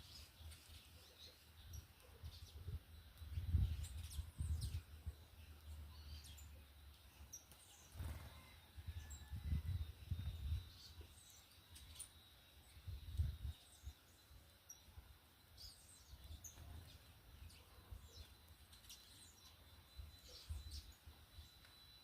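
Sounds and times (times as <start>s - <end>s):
small birds chirping: 0.0s - 22.0s
faint steady high tone: 17.8s - 22.0s.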